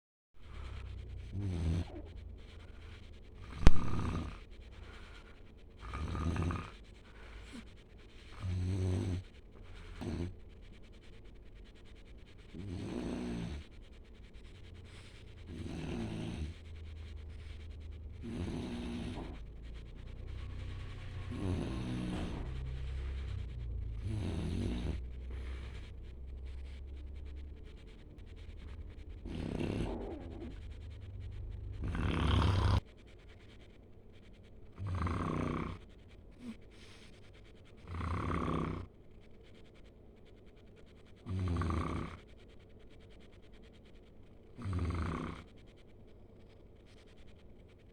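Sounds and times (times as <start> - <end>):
low steady hum: 0.4 - 12.7, 13.6 - 34.8
person snoring: 0.5 - 5.2, 5.8 - 6.8, 15.0 - 27.0, 28.5 - 32.8.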